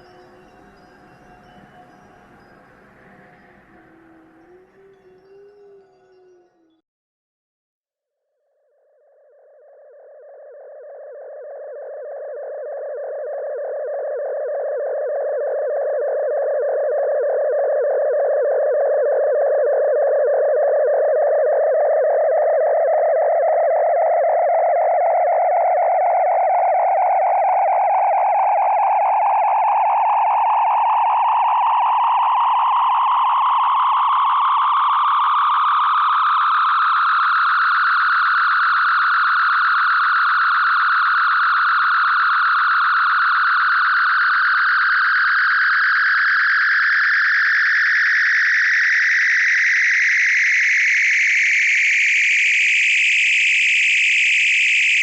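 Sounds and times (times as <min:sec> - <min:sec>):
buzzy fluttering electronic tone: 0:00.0 - 0:06.8.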